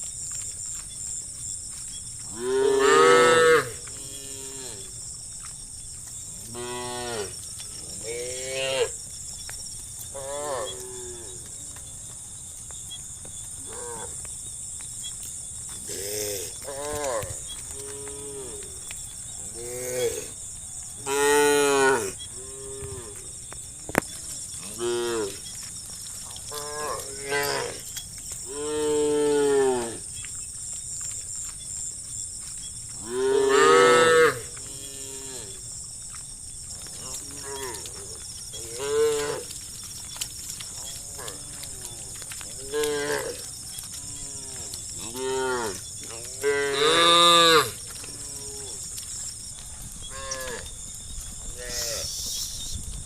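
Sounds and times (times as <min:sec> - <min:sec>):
steady high hiss: 0:51.7 - 0:52.8.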